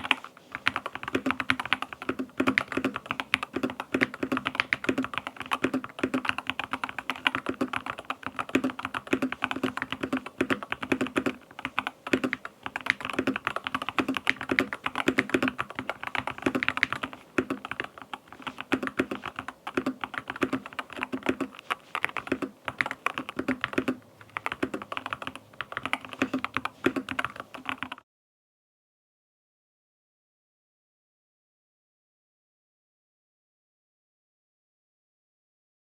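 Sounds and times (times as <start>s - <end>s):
fast keyboard typing: 0.0s - 28.0s.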